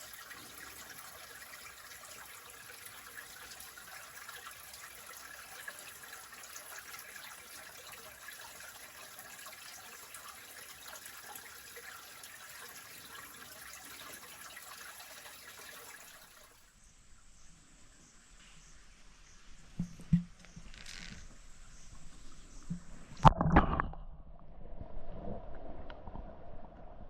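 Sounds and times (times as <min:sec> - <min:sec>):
small splashes and drips: 0:00.0 - 0:16.7
stream water trickling: 0:00.0 - 0:16.8, 0:17.8 - 0:23.7.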